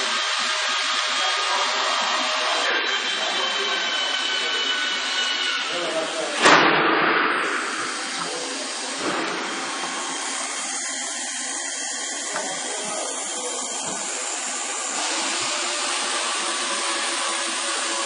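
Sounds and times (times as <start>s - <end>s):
cnc router whirring: 0.0s - 6.4s, 7.4s - 18.0s.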